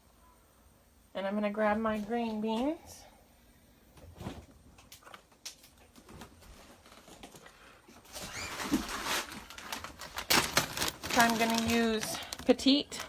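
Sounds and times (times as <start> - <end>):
package rustling and clicking: 8.1 - 13.0.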